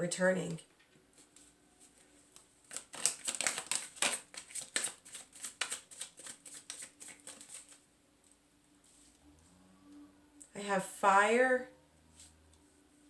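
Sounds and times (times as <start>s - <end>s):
cards being shuffled: 1.2s - 7.8s.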